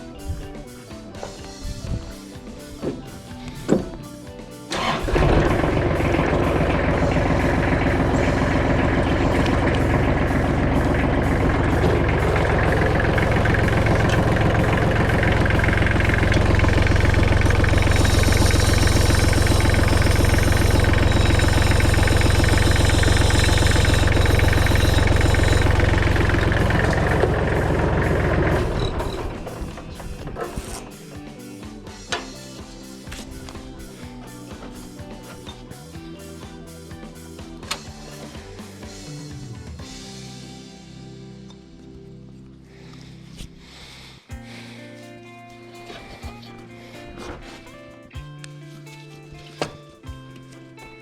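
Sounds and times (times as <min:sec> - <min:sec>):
tractor diesel engine running: 0:04.7 - 0:31.0
thin high whine: 0:06.1 - 0:27.8.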